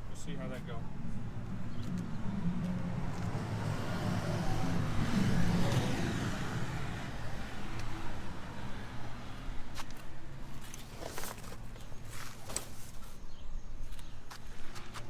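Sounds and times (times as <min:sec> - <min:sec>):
passing engine hum: 0:00.0 - 0:10.8.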